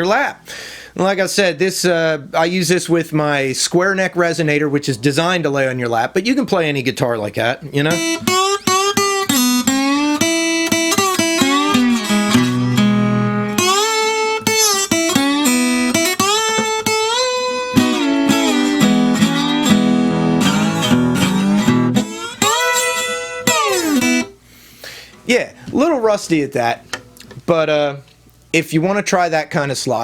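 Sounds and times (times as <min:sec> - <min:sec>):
slide guitar blues notes: 0:07.6 - 0:24.4
low bass guitar notes: 0:07.8 - 0:24.4.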